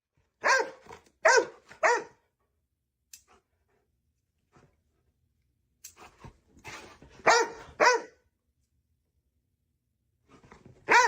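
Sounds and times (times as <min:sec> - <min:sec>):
dog barking: 0:00.4 - 0:02.2, 0:07.2 - 0:08.2.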